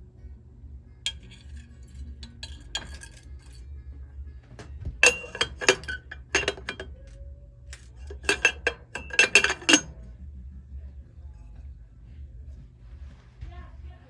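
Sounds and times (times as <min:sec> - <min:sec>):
metal tools clinking on bench: 0:01.1 - 0:03.6, 0:04.6 - 0:10.0.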